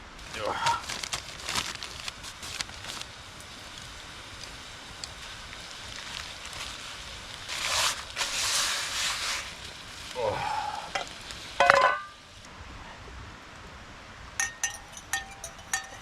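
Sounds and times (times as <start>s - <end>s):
loud hiss: 0.0s - 12.5s
food sizzling in cookware: 4.9s - 12.4s, 14.4s - 16.0s
ringing metal clank: 14.4s - 16.0s.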